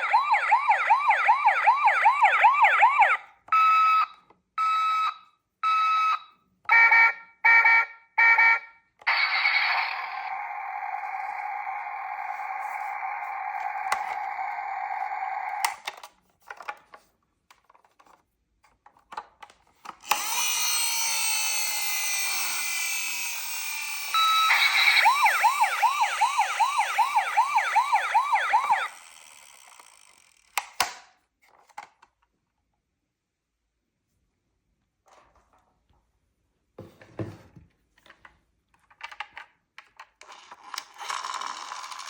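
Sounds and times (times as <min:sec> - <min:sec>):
toy siren yelping: 0:00.0 - 0:04.1, 0:06.7 - 0:15.8, 0:20.1 - 0:30.3
plastic toys handling clicks: 0:15.5 - 0:20.8, 0:28.9 - 0:32.3, 0:38.8 - 0:42.0.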